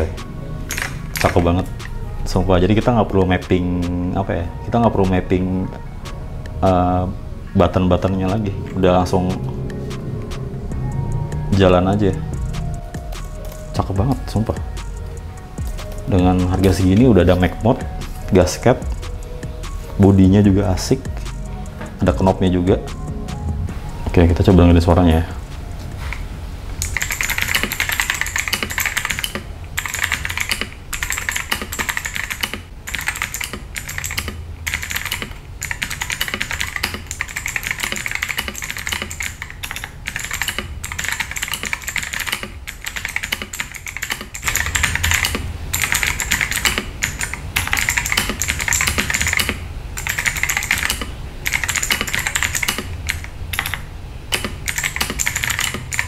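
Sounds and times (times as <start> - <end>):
mechanical keyboard typing: 0.7 - 1.9, 26.8 - 56.0.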